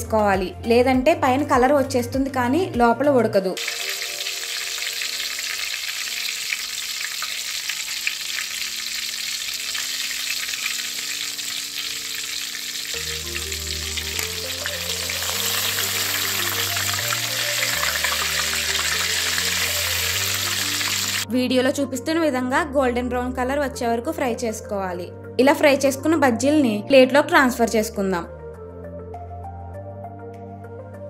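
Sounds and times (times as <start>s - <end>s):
background music: 0.0s - 31.0s
food deep-frying in oil: 3.6s - 21.2s.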